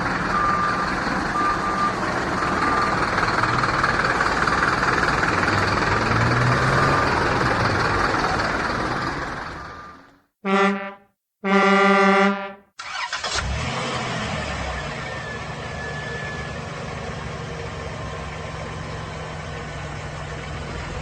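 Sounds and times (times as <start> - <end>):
engine running: 0.0 - 10.1, 12.8 - 21.0
vehicle rumbling: 0.0 - 10.2, 12.8 - 21.0
vehicle horn: 10.4 - 12.7.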